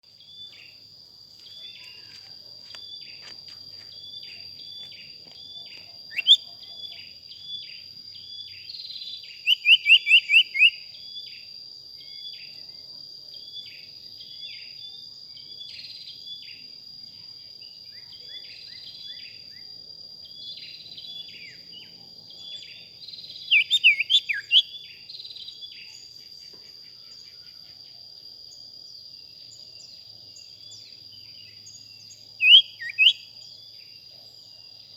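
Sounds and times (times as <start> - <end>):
high insect drone: 0.0 - 34.9
bird calling: 4.2 - 6.8, 23.5 - 24.7, 32.4 - 33.2.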